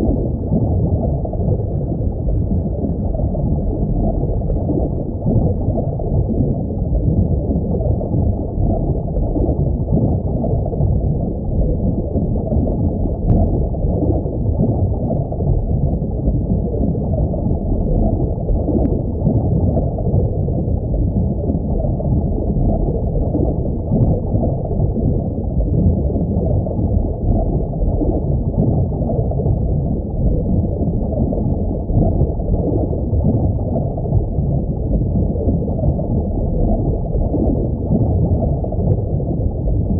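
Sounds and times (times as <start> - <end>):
muffled underwater rush of water: 0.0 - 39.9.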